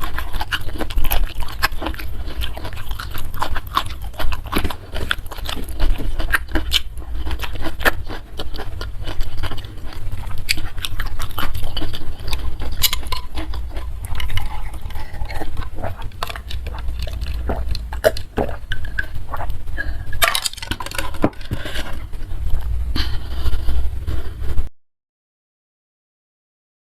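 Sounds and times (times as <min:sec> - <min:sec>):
steady low hum: 0:00.0 - 0:24.7
wet chewing and crunching: 0:00.0 - 0:24.7.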